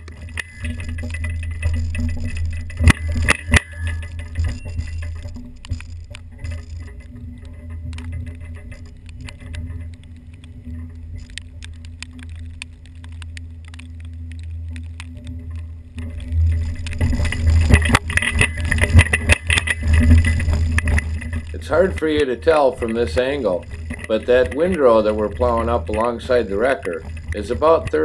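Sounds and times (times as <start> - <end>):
truck engine running: 15.6 - 28.0.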